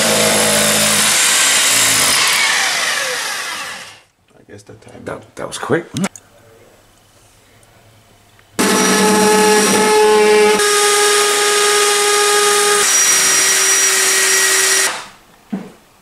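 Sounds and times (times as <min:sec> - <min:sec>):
power tool whining: 0:00.0 - 0:04.0, 0:08.6 - 0:15.2.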